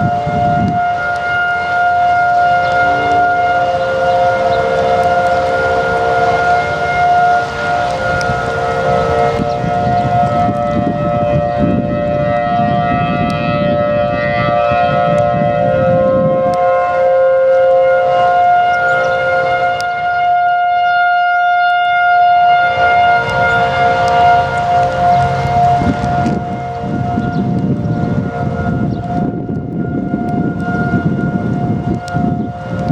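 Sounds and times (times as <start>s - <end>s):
tornado sirens steady tone: 0.0s - 32.9s
low rumble: 23.1s - 32.9s.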